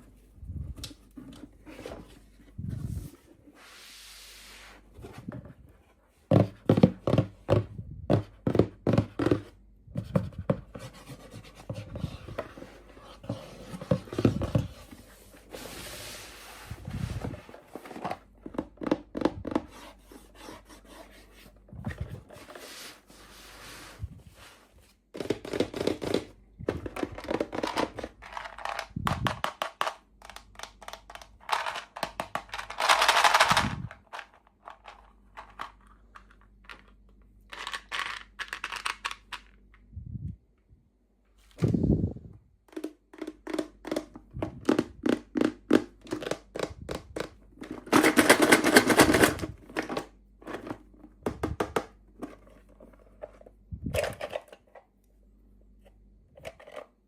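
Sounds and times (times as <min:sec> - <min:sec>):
rustling scrape: 0:00.1 - 0:06.1, 0:10.7 - 0:18.3, 0:19.7 - 0:25.0.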